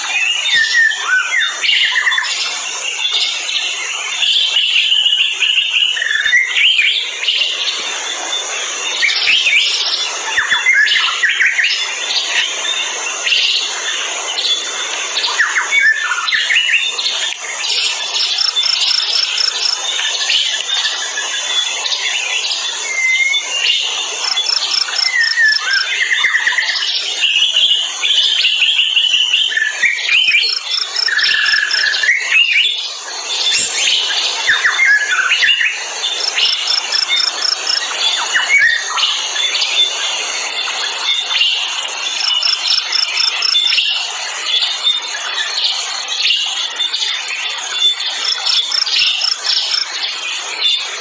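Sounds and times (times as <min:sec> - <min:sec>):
high insect drone: 0:00.1 - 0:50.6
birds chirping and calling: 0:14.3 - 0:39.8, 0:41.2 - 0:44.0, 0:47.8 - 0:50.8
rapid bird trills: 0:23.2 - 0:26.2, 0:29.5 - 0:32.1, 0:34.6 - 0:38.0.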